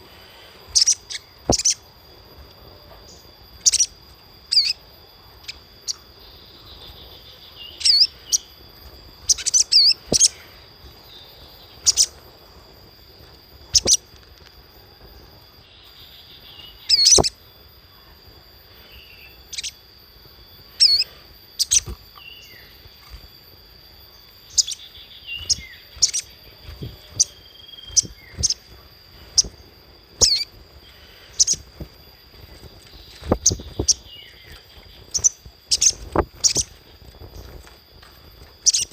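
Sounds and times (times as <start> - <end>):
faint high-pitched tone: 0.0 - 38.9
bird high chirps: 0.7 - 1.9, 3.0 - 8.6, 9.2 - 12.2, 13.7 - 14.1, 15.6 - 17.5, 18.8 - 19.9, 20.7 - 23.2, 24.2 - 37.7, 38.6 - 38.9.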